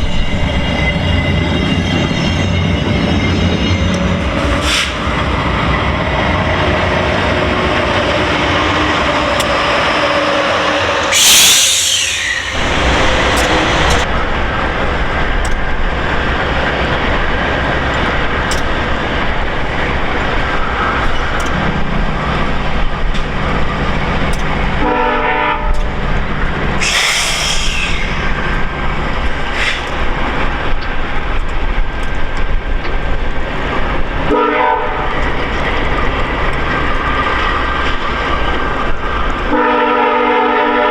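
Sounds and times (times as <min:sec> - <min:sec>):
train rumble and rail noise: 0:00.0 - 0:40.9
wheel clatter over rail joints: 0:12.5 - 0:24.8, 0:27.9 - 0:34.2.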